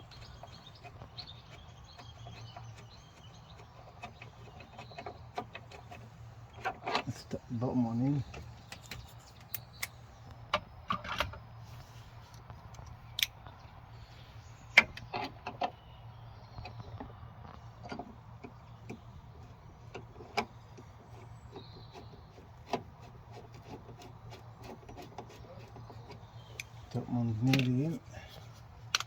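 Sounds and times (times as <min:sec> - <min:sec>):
metallic clicks and knocks of screws: 0:27.5 - 0:27.8.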